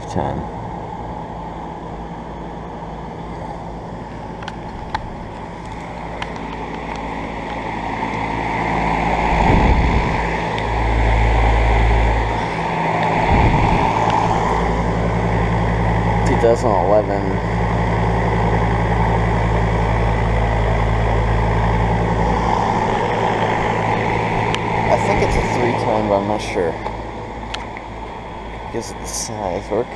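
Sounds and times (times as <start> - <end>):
air conditioner compressor hum: 0.0 - 29.9
condenser fan noise: 0.0 - 29.9
wind buffeting microphone: 8.7 - 16.2, 20.2 - 28.7.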